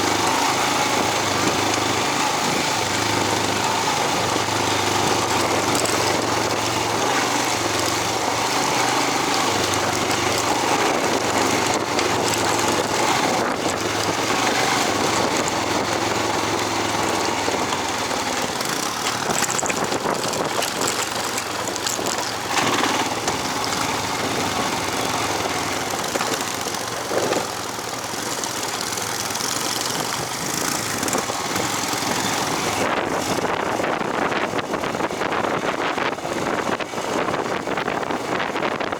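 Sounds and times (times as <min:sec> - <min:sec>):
small engine running: 0:00.0 - 0:38.9
wind buffeting microphone: 0:09.2 - 0:38.9.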